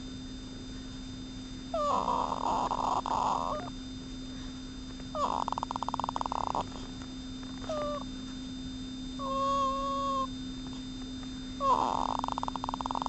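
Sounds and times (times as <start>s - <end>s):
cat making baby-like vocal noises: 1.8s - 3.7s, 5.2s - 6.6s, 7.7s - 8.0s, 9.2s - 10.3s, 11.6s - 13.0s.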